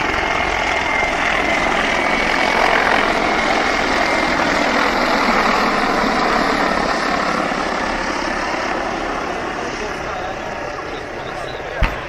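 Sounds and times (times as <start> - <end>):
helicopter flying overhead: 0.0 - 12.0.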